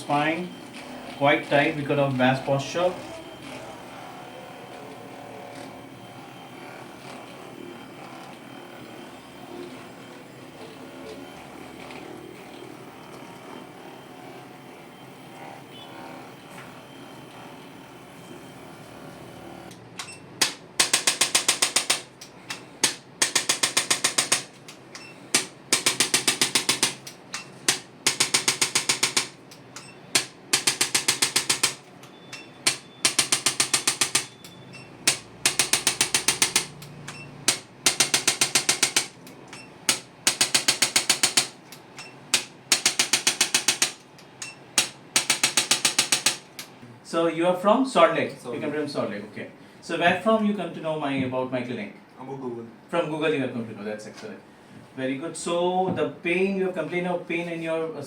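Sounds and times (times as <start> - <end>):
massage gun hammering: 0.0 - 14.4, 15.0 - 46.8.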